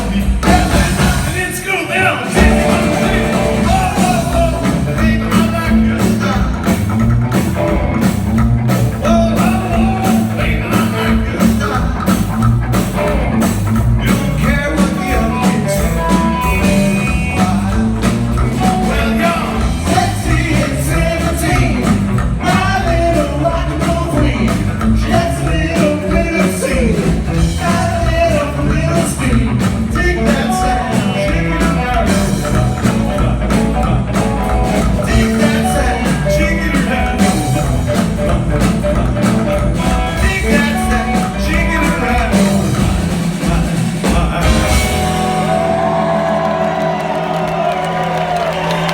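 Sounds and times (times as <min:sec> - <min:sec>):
upright bass line: 0:00.0 - 0:01.6, 0:02.3 - 0:48.9
person singing: 0:00.0 - 0:08.1, 0:08.8 - 0:12.4, 0:14.0 - 0:47.5
electric guitar: 0:00.0 - 0:48.9
fast drums: 0:00.0 - 0:48.9.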